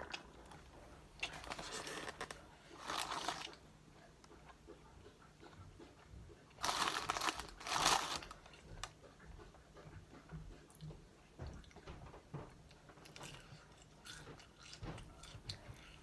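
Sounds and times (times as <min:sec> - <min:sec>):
crunching fried chicken: 0:06.6 - 0:08.5.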